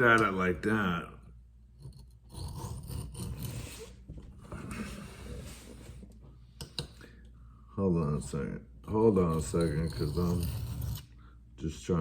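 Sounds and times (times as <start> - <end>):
knife scraping on sharpening stone: 1.8 - 3.9, 9.3 - 11.1.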